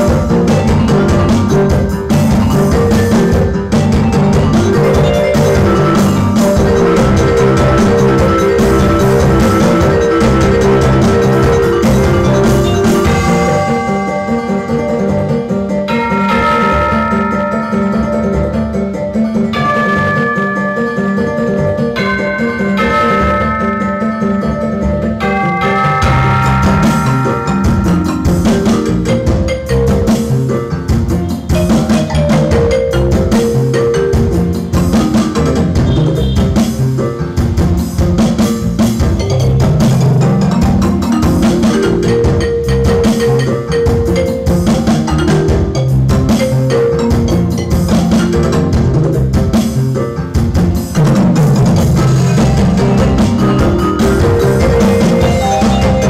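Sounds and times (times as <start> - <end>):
bass line: 0.0 - 56.0
drums: 0.0 - 56.0
mallet-like percussion: 0.0 - 56.0.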